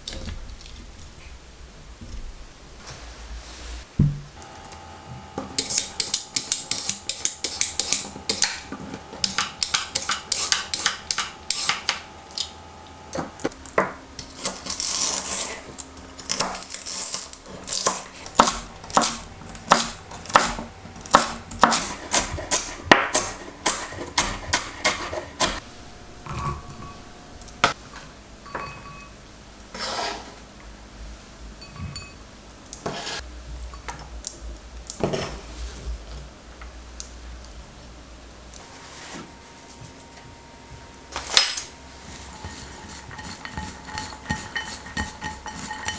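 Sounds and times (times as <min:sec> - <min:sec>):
utensils clicking against dishes: 0:05.5 - 0:12.6, 0:13.4 - 0:25.6, 0:41.4 - 0:45.9.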